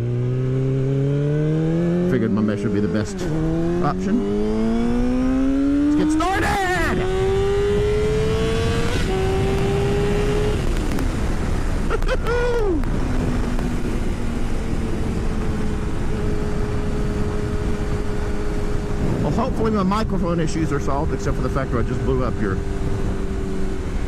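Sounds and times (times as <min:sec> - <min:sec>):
motorcycle engine accelerating: 0:00.0 - 0:24.0
wind rushing: 0:03.2 - 0:19.8.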